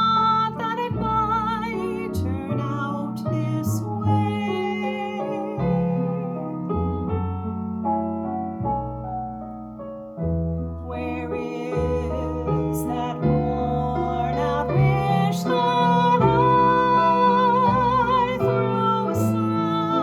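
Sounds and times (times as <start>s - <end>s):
woman singing with vibrato: 0.0s - 6.4s, 10.9s - 20.0s
slow piano ballad: 0.0s - 20.0s.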